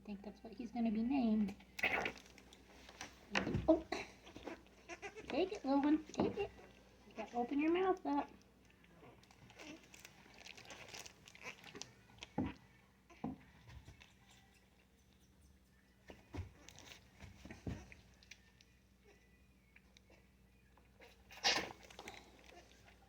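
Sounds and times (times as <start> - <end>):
goat kids suckling: 1.5 - 15.0, 21.0 - 23.0.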